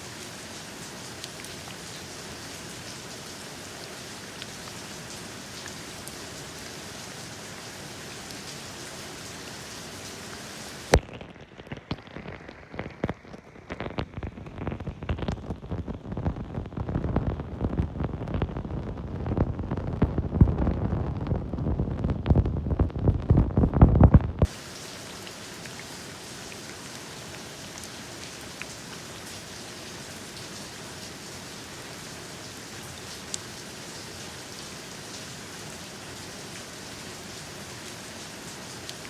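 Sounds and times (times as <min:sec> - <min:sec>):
rain falling: 0:00.0 - 0:39.0
low uneven rumble with crackles: 0:10.2 - 0:31.2.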